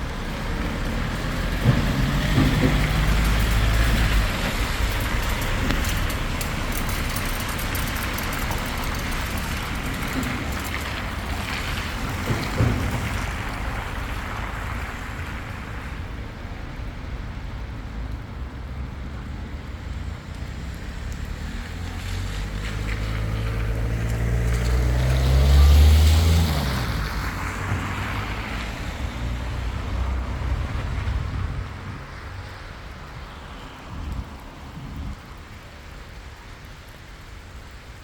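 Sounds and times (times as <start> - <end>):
rain hiss on wet street: 0.0 - 38.0
vehicle driving past: 20.6 - 32.4.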